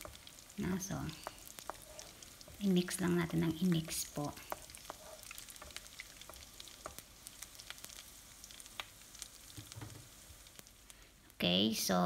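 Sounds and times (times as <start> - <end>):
onion sizzling in hot oil: 0.0 - 12.0.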